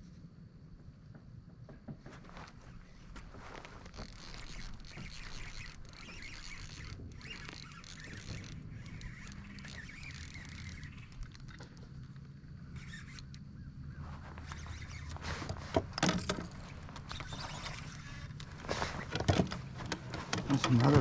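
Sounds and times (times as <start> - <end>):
gear knocking against kayak: 14.4 - 21.0.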